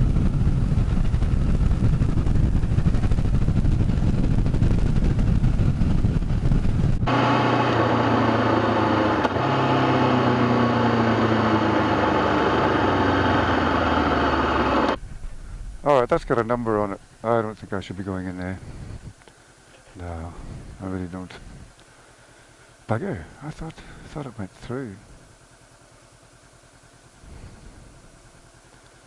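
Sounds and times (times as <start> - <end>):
wind rumble on microphone: 0.0 - 7.1, 18.5 - 19.2, 20.3 - 20.8
motorcycle engine chugging: 0.0 - 15.4.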